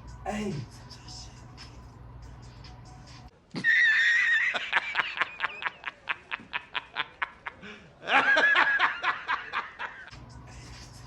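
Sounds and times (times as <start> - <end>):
high-pitched laughter: 3.5 - 10.1.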